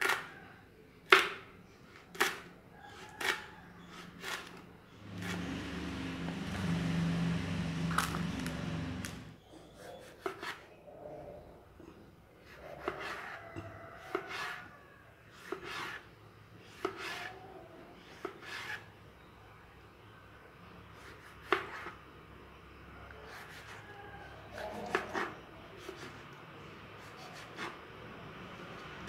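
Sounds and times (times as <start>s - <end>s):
knife cutting vegetables: 1.9s - 6.0s, 9.1s - 10.7s, 24.5s - 26.2s, 27.0s - 27.8s.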